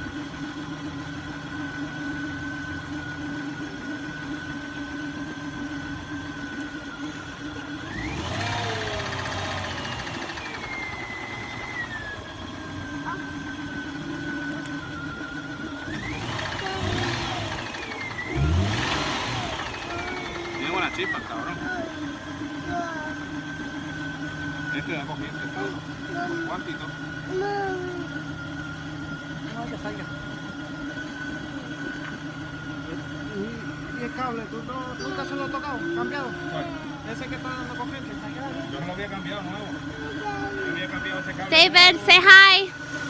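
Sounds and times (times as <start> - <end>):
car engine idling with whine: 0.0 - 43.0
car engine revving: 7.5 - 27.3.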